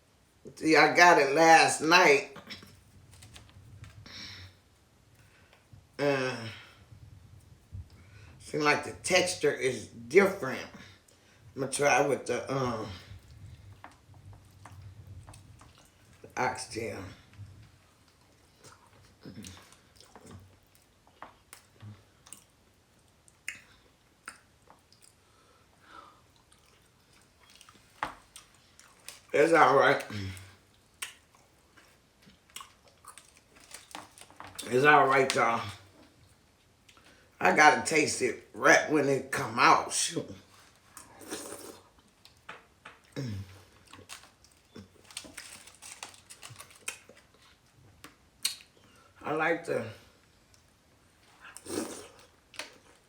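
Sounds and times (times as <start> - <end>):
person chewing food: 12.9 - 16.3, 17.2 - 29.3, 30.4 - 34.6, 40.5 - 49.2, 50.5 - 53.0
mouth smacks and clicks: 23.3 - 25.2, 48.0 - 48.9.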